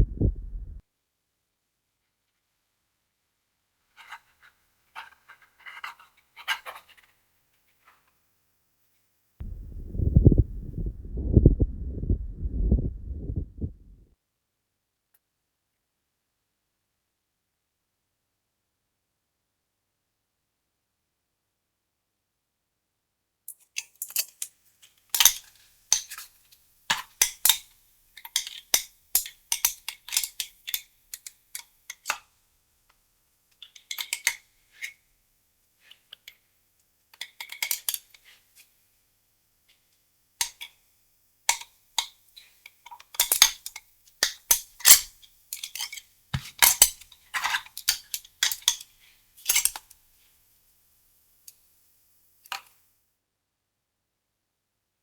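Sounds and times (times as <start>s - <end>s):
lung crackles through stethoscope: 9.4s - 14.0s.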